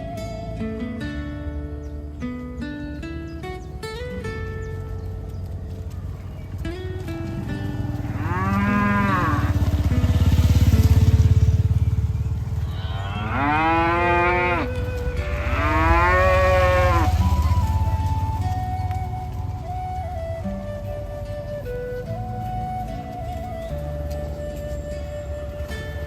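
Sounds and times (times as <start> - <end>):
cows mooing: 7.6 - 11.0, 12.6 - 17.7.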